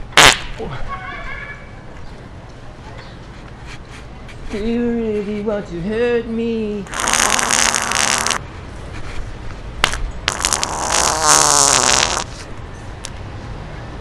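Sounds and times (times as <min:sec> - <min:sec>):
wet sputtering farts: 0:06.9 - 0:08.4, 0:10.3 - 0:12.4.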